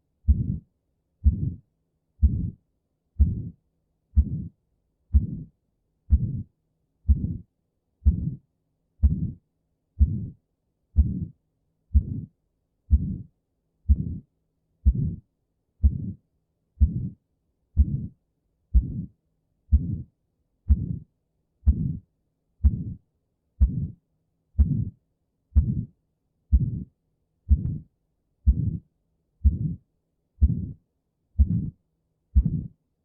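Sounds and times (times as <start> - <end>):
heartbeat with murmur: 0.3 - 0.6, 1.2 - 1.6, 2.2 - 2.6, 3.2 - 3.6, 4.2 - 4.5, 5.1 - 5.5, 6.1 - 6.5, 7.1 - 8.4, 9.0 - 9.4, 10.0 - 10.4, 11.0 - 11.3, 11.9 - 12.3, 12.9 - 13.3, 13.9 - 14.2, 14.8 - 15.2, 15.8 - 16.2, 16.8 - 17.2, 17.8 - 18.1, 18.7 - 19.1, 19.7 - 20.1, 20.7 - 22.0, 22.6 - 23.0, 23.6 - 24.0, 24.6 - 25.0, 25.6 - 25.9, 26.5 - 26.9, 27.5 - 27.9, 28.5 - 28.8, 29.4 - 29.8, 30.4 - 30.8, 31.4 - 31.8, 32.4 - 32.8.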